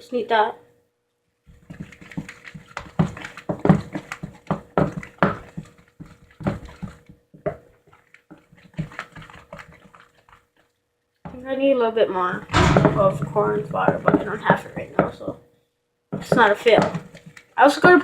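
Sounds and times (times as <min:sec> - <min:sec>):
wet slime squelching and slapping: 0:01.5 - 0:10.7.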